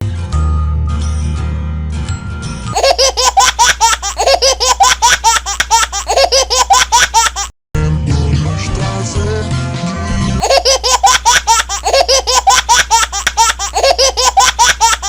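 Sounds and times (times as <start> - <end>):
music: 0.0 - 2.8, 7.8 - 10.6
child laughing: 2.8 - 7.5, 10.4 - 15.0.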